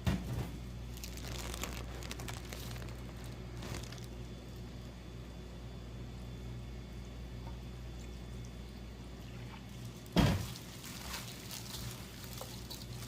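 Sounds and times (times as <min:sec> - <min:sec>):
steady low hum: 0:00.0 - 0:13.0
light clicks and crackles: 0:00.9 - 0:04.3, 0:09.8 - 0:13.0.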